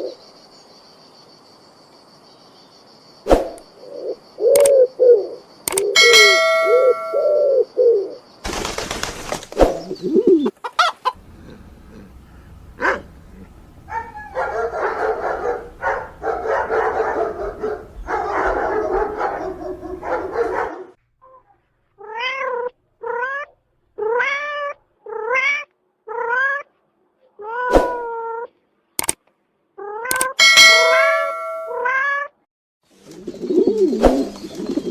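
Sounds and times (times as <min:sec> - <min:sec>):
mixed animal calls: 0:09.7 - 0:22.2.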